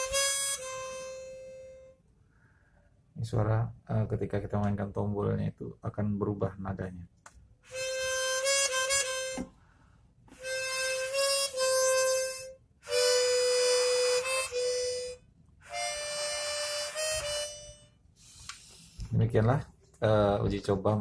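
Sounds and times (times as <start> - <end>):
harmonica playing held notes: 0.0 - 2.0, 7.7 - 9.6, 10.3 - 18.4.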